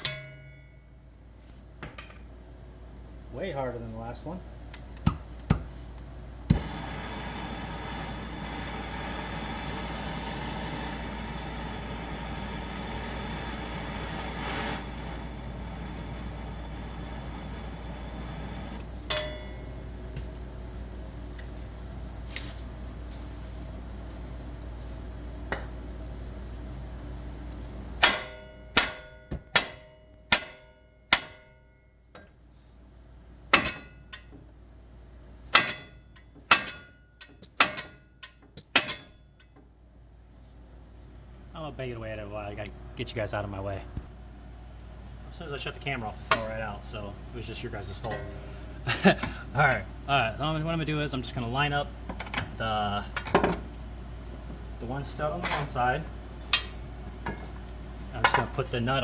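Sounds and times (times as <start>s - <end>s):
hammer striking metal: 0.0s - 0.8s, 19.1s - 19.7s, 28.0s - 31.7s, 33.5s - 34.3s, 35.5s - 39.2s
constant low hum: 0.0s - 59.0s.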